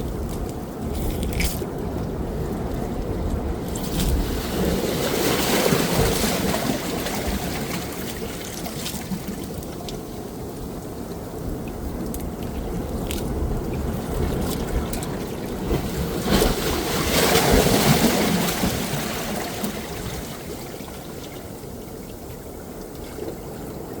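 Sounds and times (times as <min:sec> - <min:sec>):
low rumbling on microphone: 0:00.0 - 0:04.8
surf washing: 0:00.0 - 0:21.8
water at the shore: 0:00.0 - 0:24.0
wind: 0:00.0 - 0:24.0.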